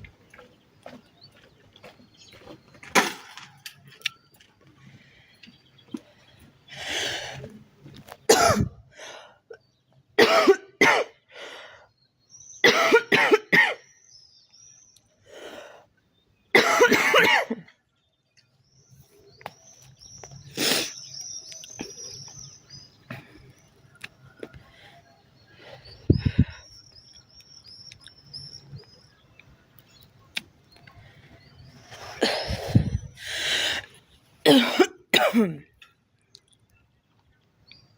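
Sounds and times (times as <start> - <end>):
girl coughing: 8.3 - 8.8, 10.2 - 11.1, 12.6 - 13.8, 16.6 - 17.6, 32.2 - 32.9, 34.5 - 35.6.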